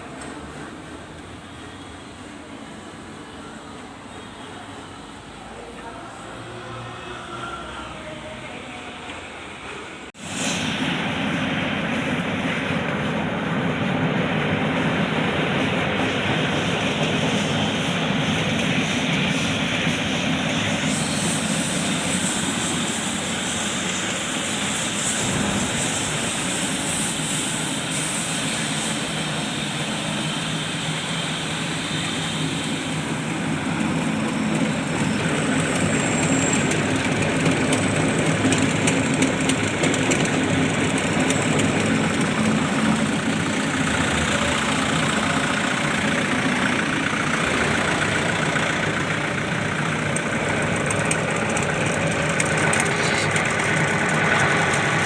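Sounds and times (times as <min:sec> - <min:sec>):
hissy high layer: 0:10.1 - 0:55.0
tractor engine drone: 0:10.1 - 0:55.0.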